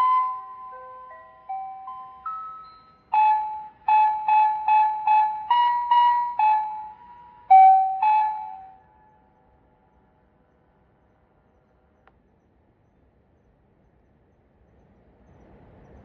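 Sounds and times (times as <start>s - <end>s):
electronic chime melody over loudspeaker: 0.0s - 8.7s.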